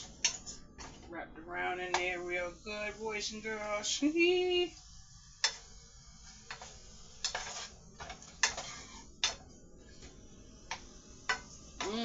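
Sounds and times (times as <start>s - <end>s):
faint room hiss: 0.0s - 12.0s.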